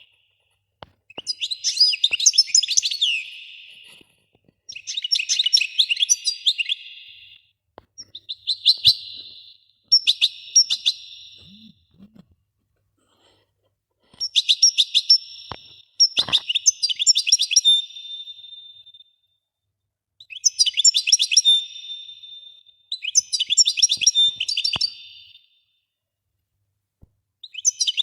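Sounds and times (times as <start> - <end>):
songbird chirping: 4.7 - 12.2.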